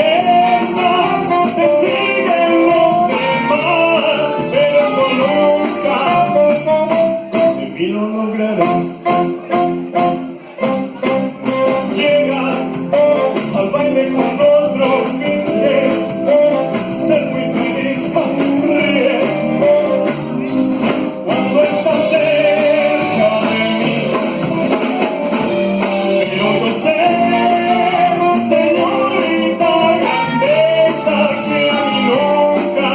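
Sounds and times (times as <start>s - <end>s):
electric guitar: 0.0s - 32.9s
live pop band playing: 0.0s - 32.9s.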